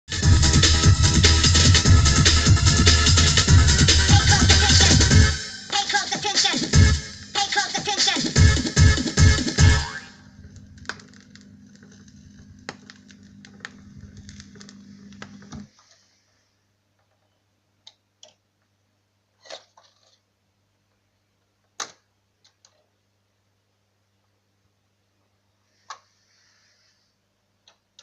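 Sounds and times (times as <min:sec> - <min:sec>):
turntable mechanism humming: 0:08.6 - 0:15.7.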